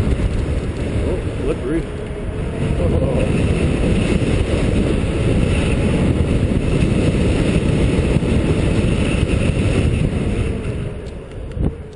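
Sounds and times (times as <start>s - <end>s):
road noise rumble: 0.0s - 11.9s
wind rush on microphone: 0.0s - 11.9s.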